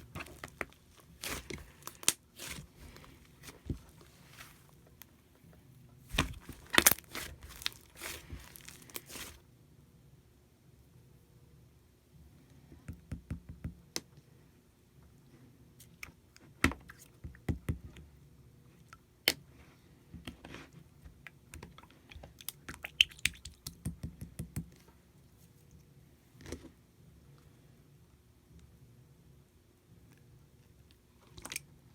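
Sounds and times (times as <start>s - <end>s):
slime squished by hand: 0.0s - 5.1s, 6.1s - 9.4s.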